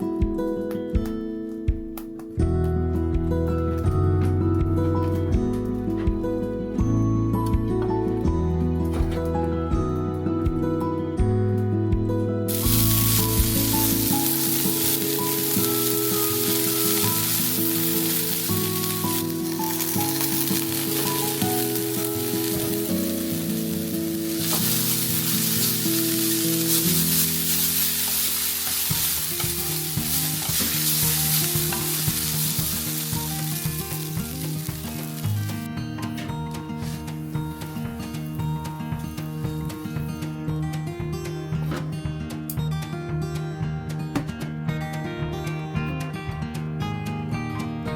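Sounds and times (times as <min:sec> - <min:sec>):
food sizzling in a pan: 0:12.5 - 0:35.6.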